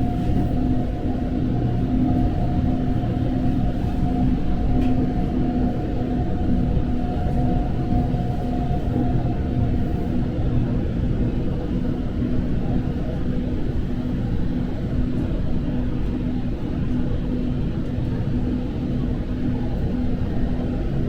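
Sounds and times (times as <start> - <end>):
train rumble inside carriage: 0.0 - 21.0.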